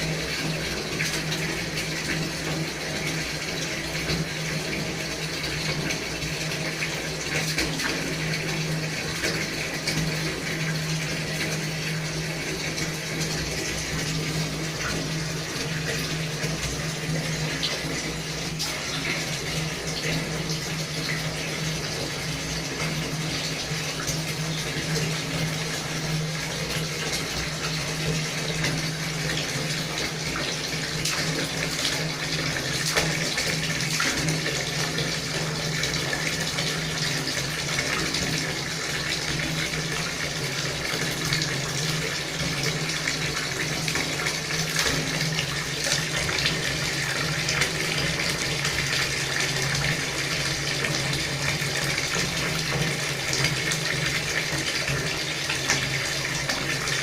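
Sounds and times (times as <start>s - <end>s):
tap water running into sink: 0.0s - 57.0s.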